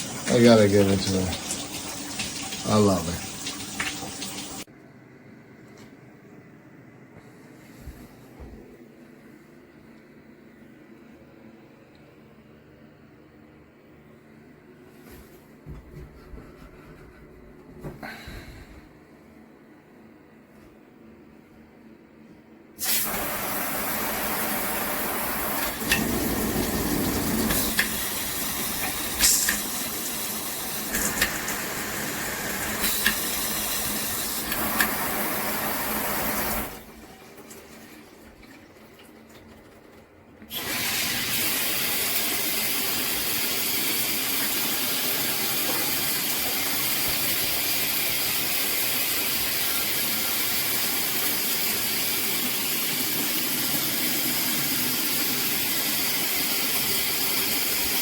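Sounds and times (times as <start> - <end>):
water spraying from shower head: 22.8 - 36.8.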